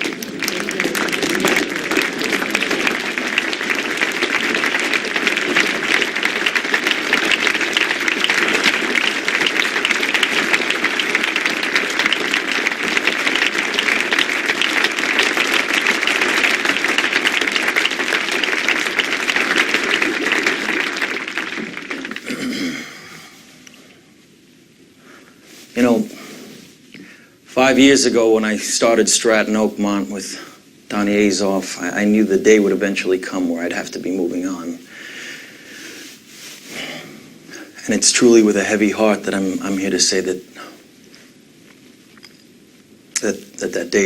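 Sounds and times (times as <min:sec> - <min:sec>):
large crowd applauding: 0:00.0 - 0:23.2.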